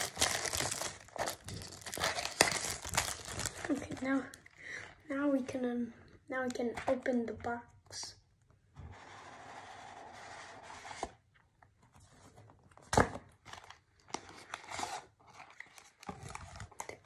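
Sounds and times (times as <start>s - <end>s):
packaging rustling and clicking: 0.0s - 4.2s.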